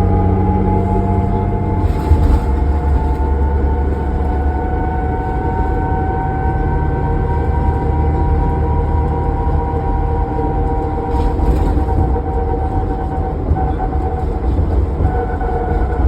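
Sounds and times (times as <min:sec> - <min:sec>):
bus engine rumble with whine: 0:00.0 - 0:16.0.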